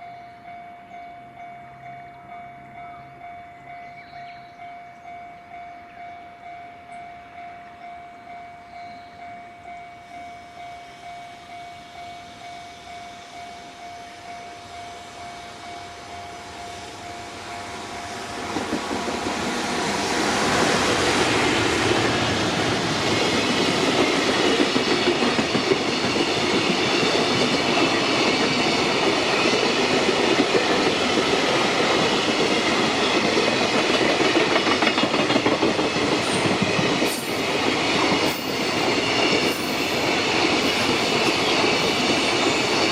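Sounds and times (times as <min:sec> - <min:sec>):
freight train wheels clattering: 0:15.7 - 0:42.9.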